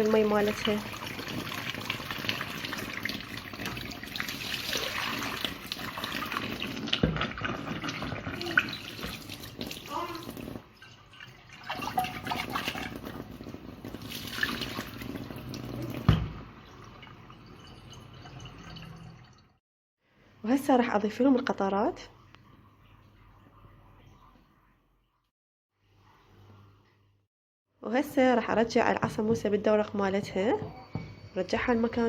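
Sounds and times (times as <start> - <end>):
tap water splashing in sink: 0.1 - 16.5.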